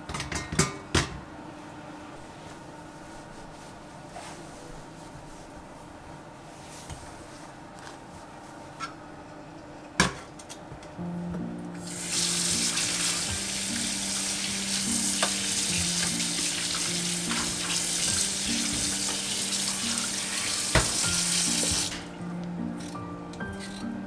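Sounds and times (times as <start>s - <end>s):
soft background music: 10.6s - 24.0s
food sizzling in a frying pan: 11.8s - 22.2s.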